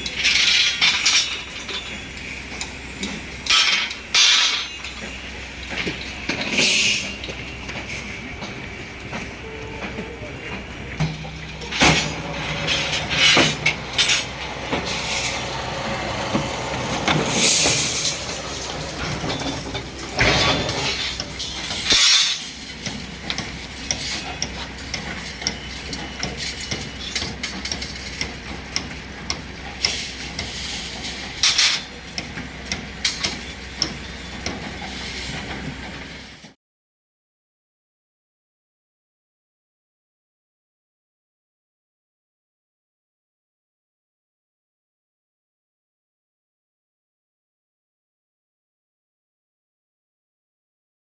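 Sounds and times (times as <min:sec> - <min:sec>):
sharp metallic knocks: 0:11.0 - 0:25.6
machine motor hum with hissing: 0:11.1 - 0:21.9.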